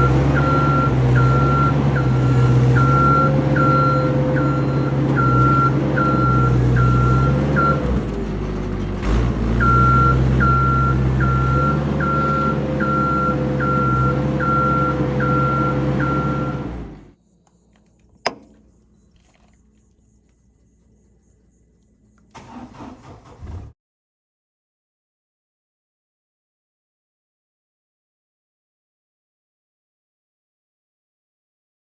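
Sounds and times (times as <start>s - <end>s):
reversing alarm beeping: 0.0s - 8.0s, 9.6s - 16.7s
vehicle engine running: 0.0s - 23.6s.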